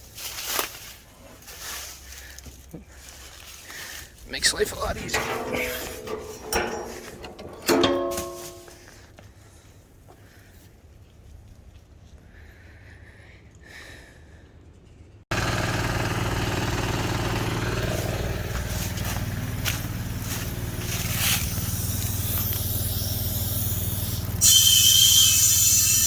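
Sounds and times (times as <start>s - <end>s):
sharp knocks: 4.9s - 8.9s
diesel engine idling: 15.3s - 24.4s.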